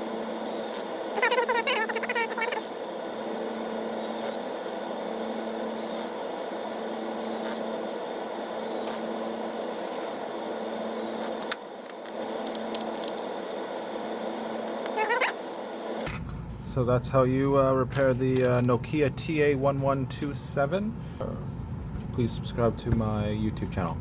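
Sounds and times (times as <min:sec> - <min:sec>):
steady background hum: 0:00.0 - 0:24.0
screwdriver clicks and scrapes: 0:11.0 - 0:13.2.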